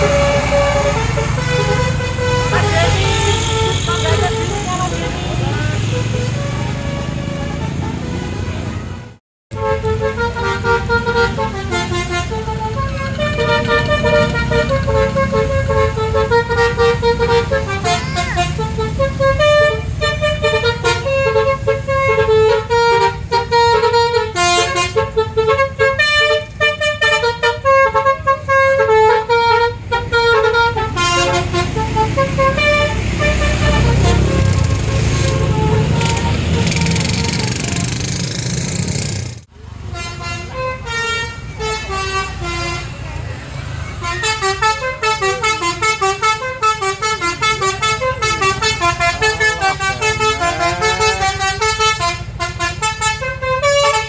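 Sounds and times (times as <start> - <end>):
bus engine running: 0.0 - 54.0
bus multi-tone horn tune: 0.0 - 54.0.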